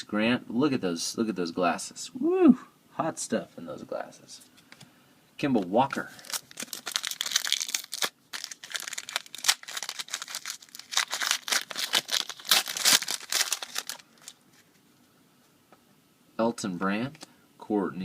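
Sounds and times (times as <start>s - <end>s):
wrapper tearing and crinkling: 6.2s - 14.7s
cards handled: 6.2s - 14.8s.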